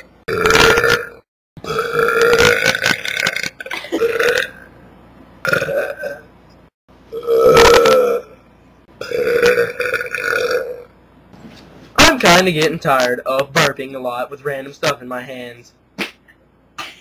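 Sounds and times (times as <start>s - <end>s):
person burping: 0.0s - 4.7s, 5.4s - 6.3s, 7.1s - 8.4s, 9.0s - 10.9s.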